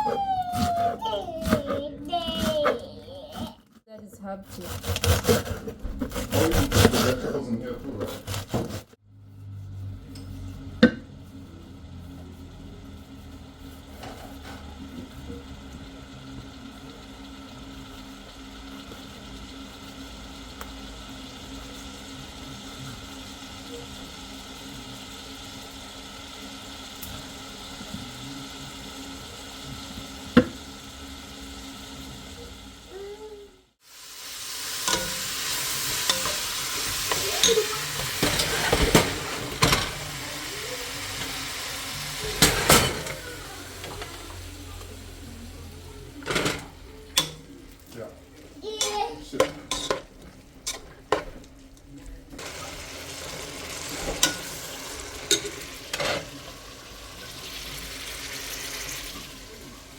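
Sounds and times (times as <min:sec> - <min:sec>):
food sizzling in a pan: 0:11.8 - 0:51.2, 0:52.4 - 0:59.9.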